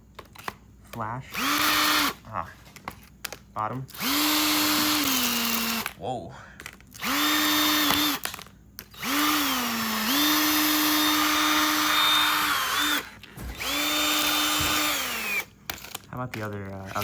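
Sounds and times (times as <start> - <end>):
drill grinding into phone: 1.3 - 2.2, 3.9 - 6.0, 7.0 - 17.0.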